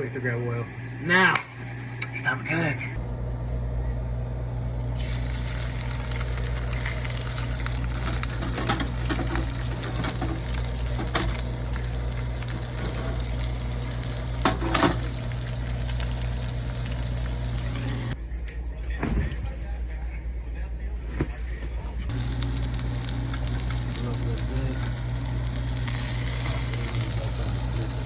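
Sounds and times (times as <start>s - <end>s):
fish sizzling in hot oil: 4.6s - 18.2s, 22.1s - 28.0s.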